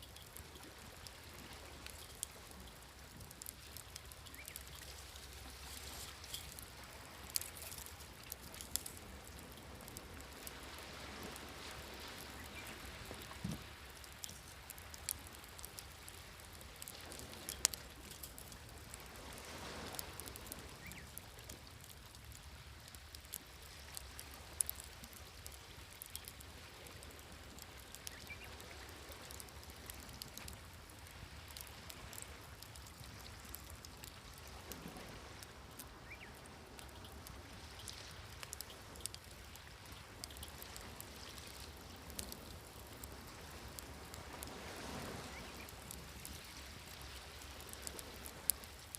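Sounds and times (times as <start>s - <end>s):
campfire crackling and popping: 0.0s - 48.9s
waves washing: 0.8s - 21.2s, 40.3s - 48.8s.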